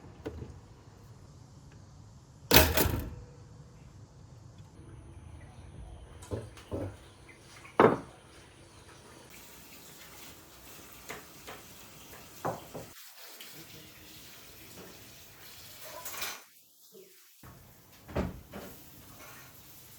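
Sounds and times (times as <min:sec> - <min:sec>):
water running: 0:06.0 - 0:19.9.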